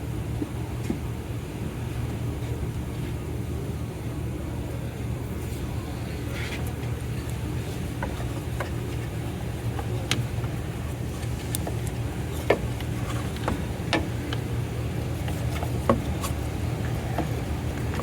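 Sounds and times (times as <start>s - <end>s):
steady low hum: 0.0s - 18.0s
tape and wires clicking and crackling: 6.4s - 18.0s.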